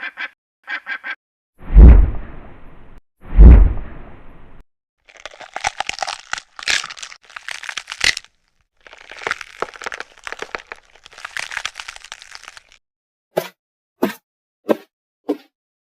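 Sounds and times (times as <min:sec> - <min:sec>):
dense crackling and crinkling: 0:05.1 - 0:12.8.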